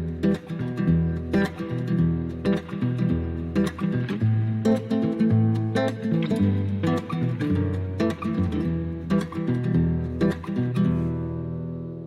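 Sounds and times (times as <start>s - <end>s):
acoustic guitar music with beat: 0.0s - 12.0s.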